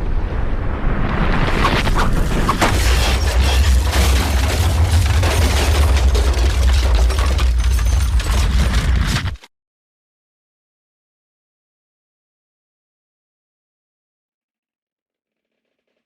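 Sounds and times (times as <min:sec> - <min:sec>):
deep volcanic rumble: 0:00.0 - 0:07.4.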